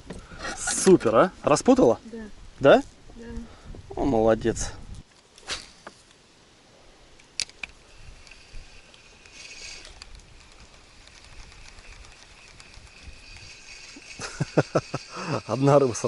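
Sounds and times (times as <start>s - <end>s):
faint outdoor ambience: 0.0s - 16.0s
sharp clicks: 7.2s - 14.0s.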